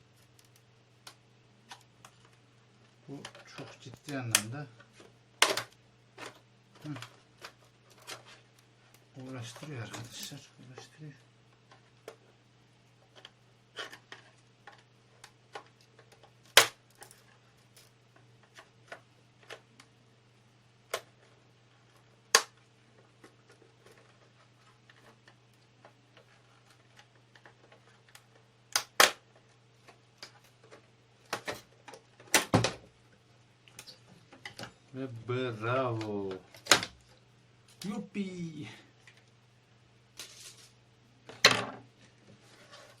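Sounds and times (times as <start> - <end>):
loud sharp plastic cracks: 14.7 - 17.0, 22.3 - 22.6, 28.1 - 29.3, 31.2 - 32.8, 36.5 - 37.0
plastic case clips snapping: 28.7 - 29.2.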